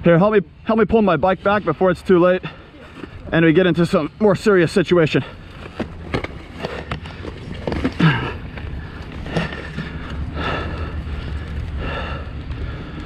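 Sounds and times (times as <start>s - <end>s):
dirt bike engine idling: 4.0s - 13.0s
clunks and scuffs of bike handling: 5.4s - 10.2s.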